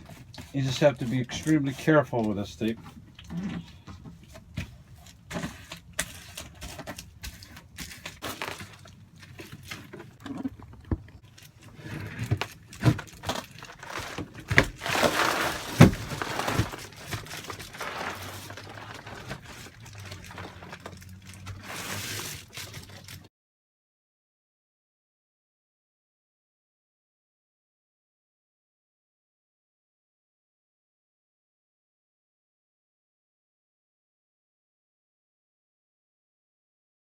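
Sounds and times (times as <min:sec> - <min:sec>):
foil crinkling and rustling: 0:00.0 - 0:23.3.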